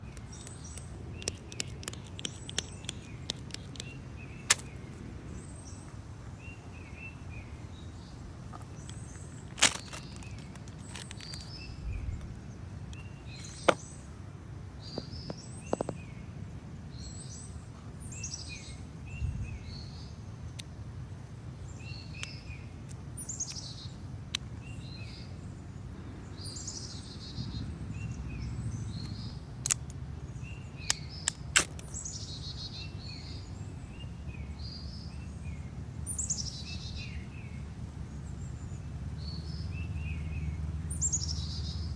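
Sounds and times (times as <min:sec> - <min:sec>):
sharp clicks and snaps: 0:00.0 - 0:04.8, 0:29.0 - 0:30.0, 0:30.8 - 0:32.0
small birds chirping: 0:00.0 - 0:14.2, 0:14.8 - 0:41.9
low background noise: 0:00.0 - 0:41.9.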